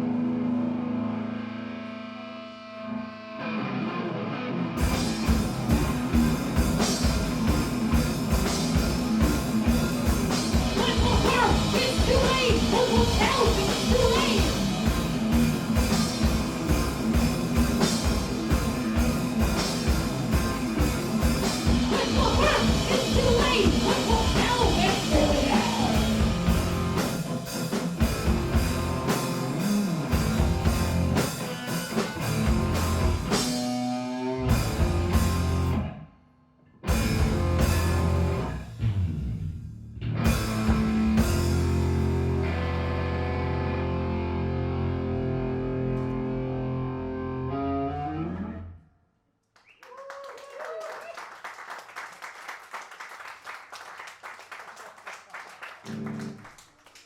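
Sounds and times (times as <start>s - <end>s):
punk rock band playing live: 3.4s - 35.9s, 36.8s - 39.0s, 40.2s - 46.4s
fast drum beat: 4.8s - 33.5s
person singing: 10.7s - 14.6s, 21.8s - 26.2s.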